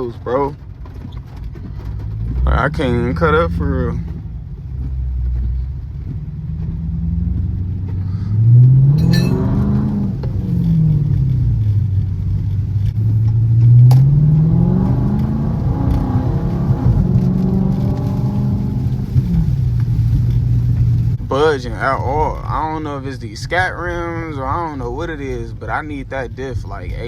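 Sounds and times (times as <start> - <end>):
car engine revving: 0.0 - 27.0
tyres hissing on wet road: 14.1 - 21.6.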